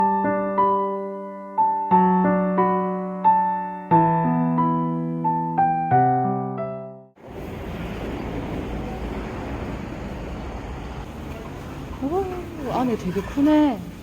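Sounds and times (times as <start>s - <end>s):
gentle electric piano music: 0.0s - 7.2s.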